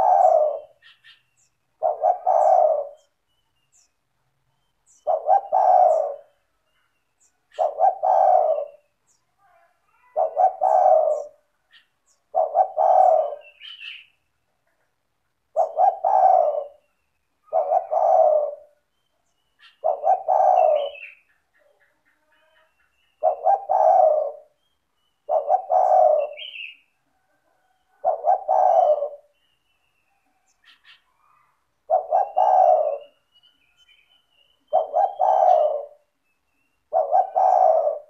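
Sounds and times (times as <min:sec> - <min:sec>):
dove cooing: 0:00.0 - 0:03.2, 0:04.8 - 0:18.9, 0:19.6 - 0:29.4, 0:30.1 - 0:36.2, 0:36.8 - 0:38.0.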